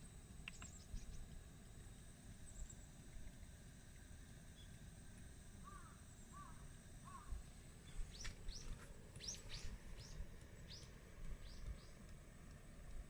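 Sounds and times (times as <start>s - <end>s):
steady low rumble: 4.8s - 13.0s
lower arched bird calls: 5.6s - 12.2s.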